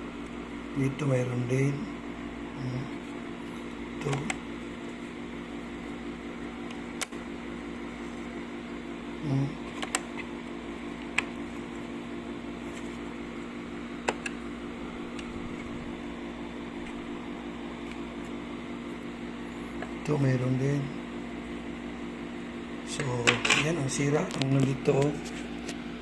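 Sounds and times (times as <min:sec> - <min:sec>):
mechanical hum: 0:00.0 - 0:26.0.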